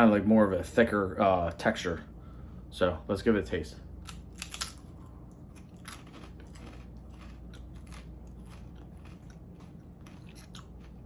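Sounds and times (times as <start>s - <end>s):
person chewing rice cake crunches: 4.0s - 11.0s.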